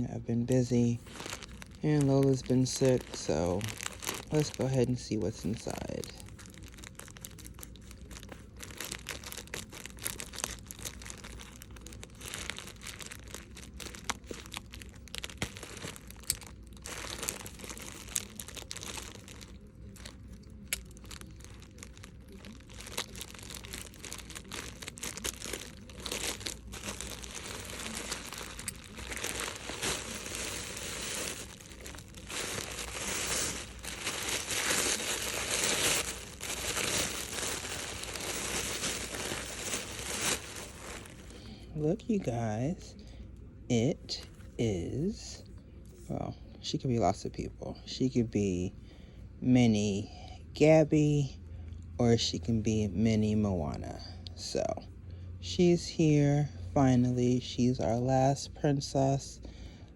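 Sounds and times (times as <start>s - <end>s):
packaging crinkling and tearing: 0.5s - 41.6s.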